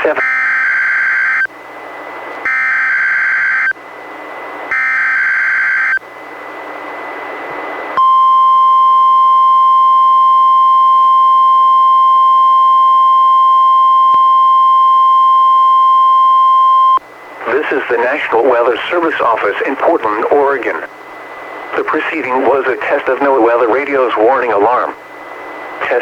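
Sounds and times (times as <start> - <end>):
radio hiss: 0.0 - 0.2, 17.3 - 26.0
steady warning alarm tone: 0.0 - 1.5, 2.4 - 3.8, 4.7 - 6.0.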